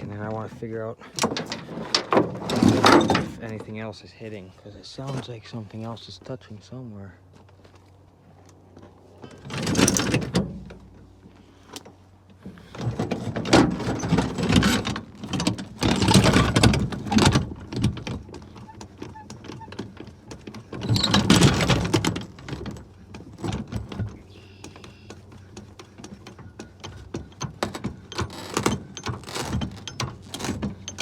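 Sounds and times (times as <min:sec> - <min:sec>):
metal clattering and scraping: 0:00.0 - 0:03.9, 0:09.2 - 0:11.0, 0:12.4 - 0:24.3.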